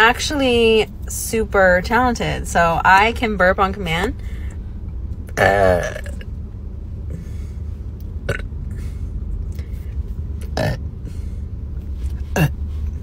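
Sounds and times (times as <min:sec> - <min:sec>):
low rumble of car in traffic: 0:00.0 - 0:13.0
woman burping: 0:05.4 - 0:06.2, 0:08.3 - 0:08.5, 0:10.6 - 0:10.8, 0:12.3 - 0:12.6.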